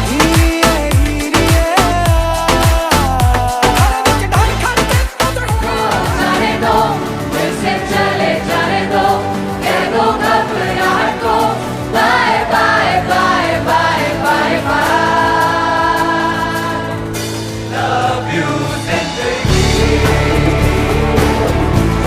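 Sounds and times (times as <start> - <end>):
heavy bass: 0.0 - 7.3, 19.0 - 22.0
song with singing voices: 0.0 - 22.0.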